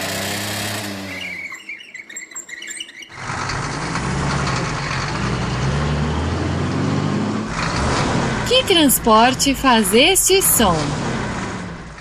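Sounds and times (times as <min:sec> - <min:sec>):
truck engine running: 0:03.1 - 0:12.0.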